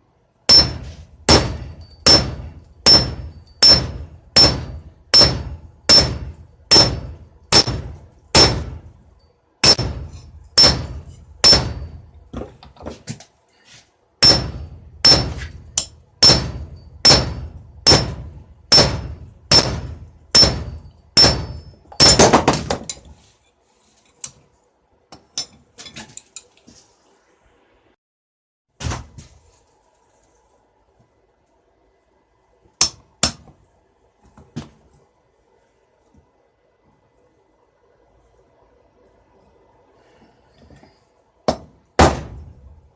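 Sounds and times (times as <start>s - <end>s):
hammer ringing on anvil: 0.5s - 8.8s, 9.6s - 12.1s, 14.2s - 22.2s.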